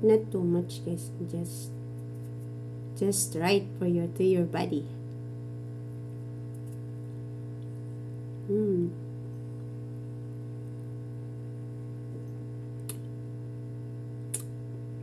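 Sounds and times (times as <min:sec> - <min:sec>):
electrical mains hum: 0:00.0 - 0:15.0
woman humming: 0:08.4 - 0:09.0.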